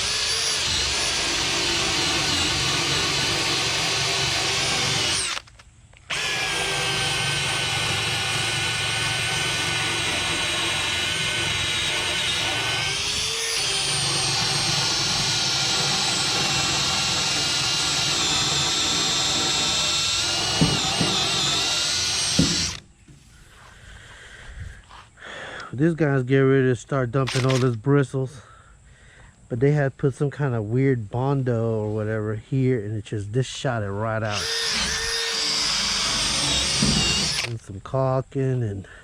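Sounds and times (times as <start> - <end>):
drill wire brush stripping paint: 0.0 - 22.8, 34.2 - 37.6.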